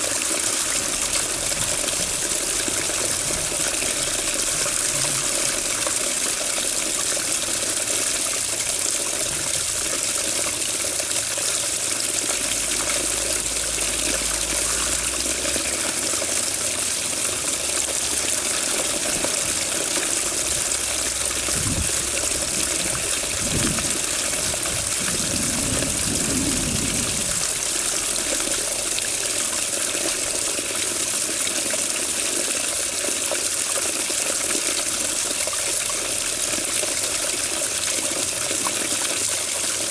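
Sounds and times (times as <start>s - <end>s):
water running and splashing: 0.0s - 39.9s
low rumbles: 20.5s - 27.9s.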